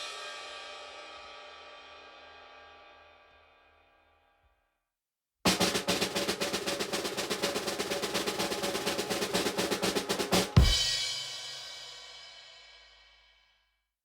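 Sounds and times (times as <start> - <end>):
bass drum and cymbal hit: 0.0 - 3.0, 5.5 - 13.2
snare drum roll: 5.5 - 12.4.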